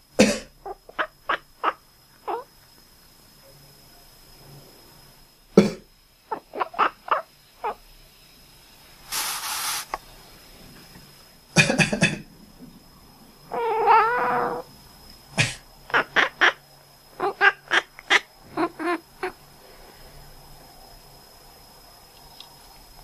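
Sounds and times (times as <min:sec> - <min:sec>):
person coughing: 0:00.2 - 0:00.5, 0:11.6 - 0:12.2, 0:15.4 - 0:15.6
breathy rush of air: 0:09.0 - 0:09.9
cat quacking calls: 0:13.5 - 0:14.6, 0:15.9 - 0:16.6, 0:17.2 - 0:19.4.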